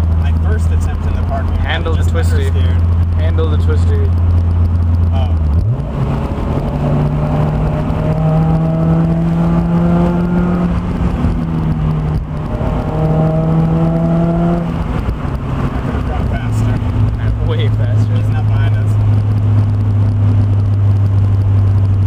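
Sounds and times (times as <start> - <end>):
car engine pulling under load: 0.0 - 22.0.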